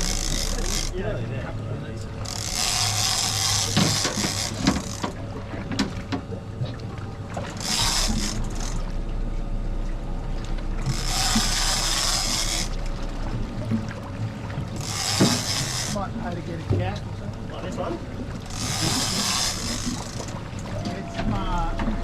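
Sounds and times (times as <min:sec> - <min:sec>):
fishing reel gears clicking: 0:00.0 - 0:01.0, 0:02.2 - 0:05.1, 0:07.6 - 0:08.8, 0:10.8 - 0:12.8, 0:14.8 - 0:16.0, 0:18.4 - 0:20.4.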